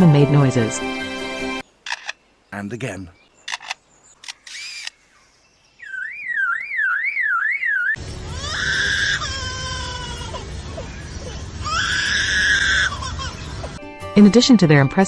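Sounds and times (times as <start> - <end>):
bird clicks: 1.9 - 2.2, 3.5 - 5.0
wavering siren-like whistle: 5.8 - 8.0.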